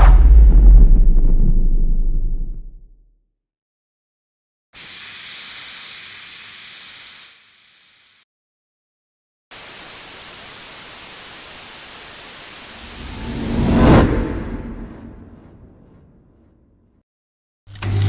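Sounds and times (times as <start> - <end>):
static hiss: 9.6 - 12.8.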